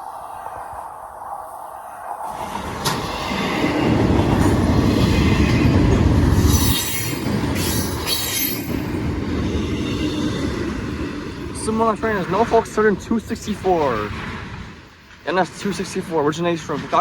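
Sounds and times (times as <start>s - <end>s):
train wheels rumbling on rails: 0.0s - 17.0s
train wheels squealing: 6.4s - 10.4s.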